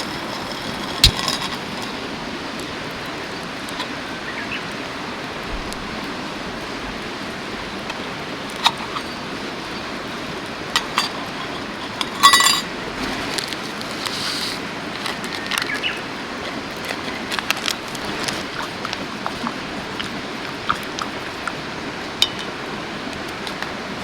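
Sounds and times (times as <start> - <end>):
mountain stream rushing: 0.0 - 24.0
clinks of small hard objects: 10.8 - 14.2
ringing clink: 12.2 - 12.7.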